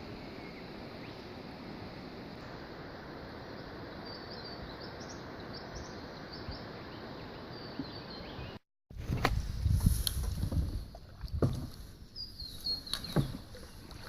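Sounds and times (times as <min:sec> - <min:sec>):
river water flowing: 0:00.0 - 0:08.4, 0:12.5 - 0:14.0.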